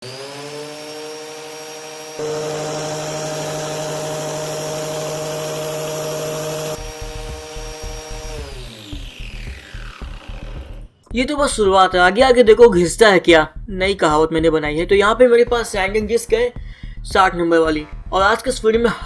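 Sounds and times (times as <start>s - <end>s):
angle grinder motor whining: 0.0s - 11.1s
grinding hiss of sanding disc: 0.1s - 10.7s
low thumping: 6.8s - 19.0s.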